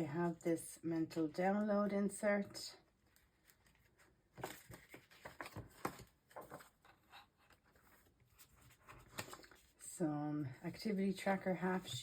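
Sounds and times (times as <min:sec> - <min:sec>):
paper rustling and tapping: 0:03.1 - 0:09.6.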